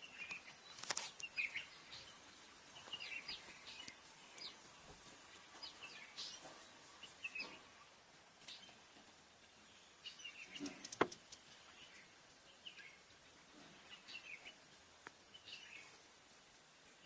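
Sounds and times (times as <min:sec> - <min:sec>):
bird chirps: 0:00.0 - 0:04.6, 0:05.4 - 0:07.7, 0:09.5 - 0:13.1, 0:15.3 - 0:16.0.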